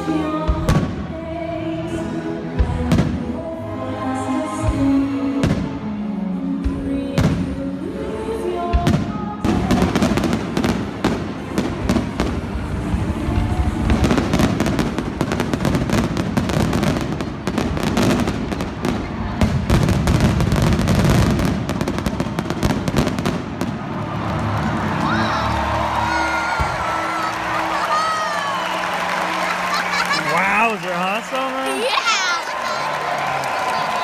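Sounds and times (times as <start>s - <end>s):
fireworks bangs and crackling: 0.5s - 1.0s, 5.4s - 5.7s, 8.8s - 24.8s.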